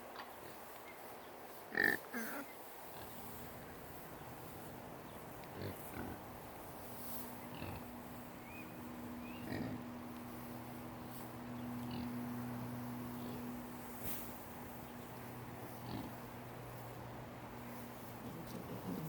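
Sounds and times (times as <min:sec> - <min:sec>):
steady low hum: 0:02.5 - 0:19.0
hogs grunting: 0:07.4 - 0:07.9, 0:09.2 - 0:10.4, 0:11.7 - 0:13.5, 0:15.6 - 0:16.4.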